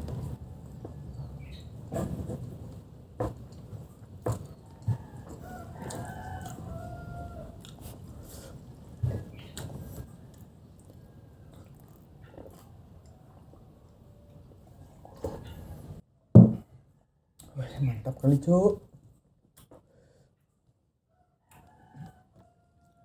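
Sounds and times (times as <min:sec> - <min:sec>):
crunching fried chicken: 0:04.2 - 0:13.6.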